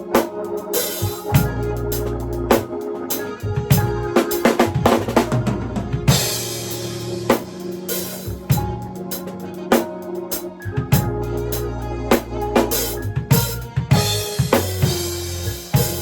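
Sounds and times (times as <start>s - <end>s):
backing track chords and bass: 0.0s - 16.0s
jazzy drum kit groove: 0.0s - 16.0s.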